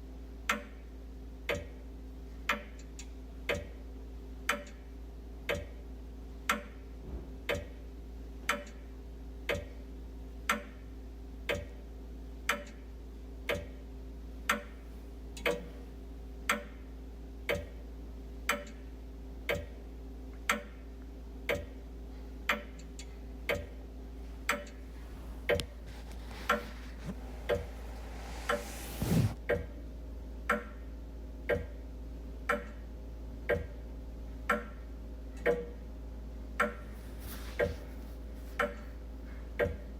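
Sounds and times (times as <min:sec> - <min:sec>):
wall clock ticking: 0:01.5 - 0:01.8, 0:02.5 - 0:03.8, 0:05.5 - 0:05.8, 0:07.5 - 0:07.8, 0:09.5 - 0:09.8, 0:11.5 - 0:11.8, 0:12.5 - 0:12.8, 0:13.5 - 0:13.8, 0:16.5 - 0:16.8, 0:18.5 - 0:18.8, 0:19.5 - 0:19.8, 0:21.5 - 0:21.8, 0:22.5 - 0:23.8
rustling: 0:24.2 - 0:29.4, 0:36.9 - 0:38.7
soft thump: 0:25.0 - 0:29.4.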